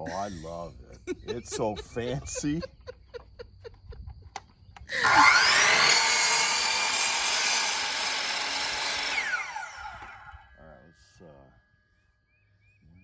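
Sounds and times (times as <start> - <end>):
miter saw cutting wood: 4.9 - 10.6.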